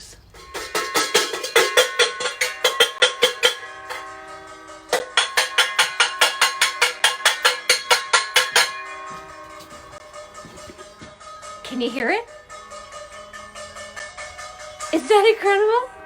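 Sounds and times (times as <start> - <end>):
bell struck rapidly: 0.4 - 10.1.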